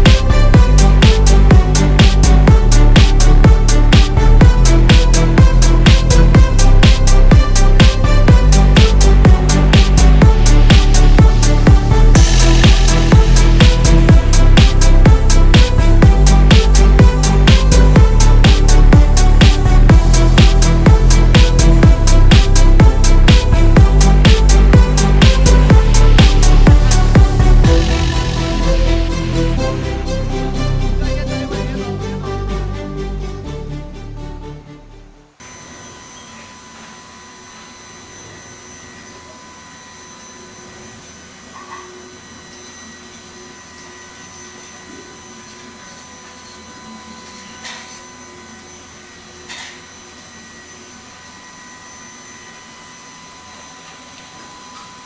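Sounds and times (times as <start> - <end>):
kick drum: 0.0 - 29.8
high cymbal beat: 0.0 - 32.1, 35.4 - 55.0
high-pitched machine whines: 0.0 - 32.1, 35.4 - 55.0
sustained bass line: 0.0 - 35.4.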